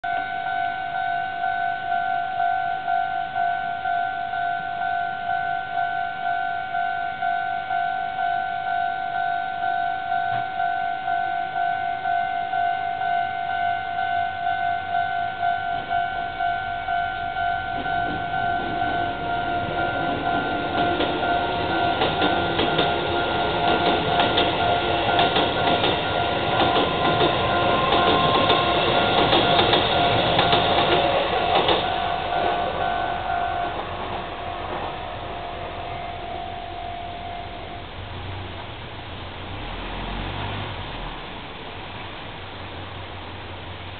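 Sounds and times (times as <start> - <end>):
level-crossing warning bell: 0.0 - 38.8
electric train approaching: 0.0 - 43.9
wheels clattering over rail joints: 17.8 - 35.4.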